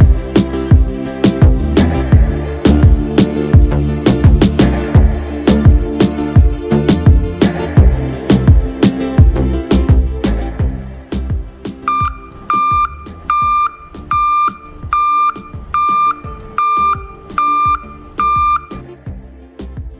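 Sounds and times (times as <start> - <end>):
background music: 0.0 - 19.9
alarm buzzer short beeps: 11.9 - 18.8.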